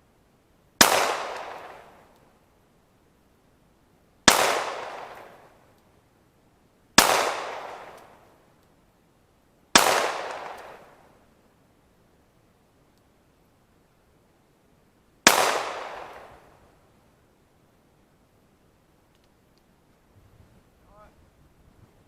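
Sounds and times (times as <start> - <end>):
pistol shots with echo: 0.8 - 2.0, 4.3 - 5.5, 7.0 - 8.1, 9.8 - 10.9, 15.2 - 16.5.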